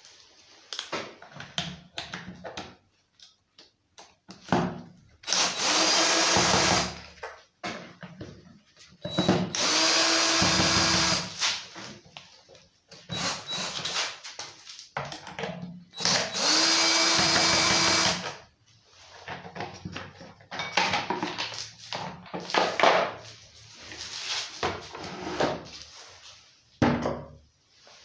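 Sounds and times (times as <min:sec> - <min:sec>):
cordless drill running: 0:05.2 - 0:07.0, 0:09.2 - 0:11.5, 0:13.1 - 0:14.1, 0:16.0 - 0:18.4.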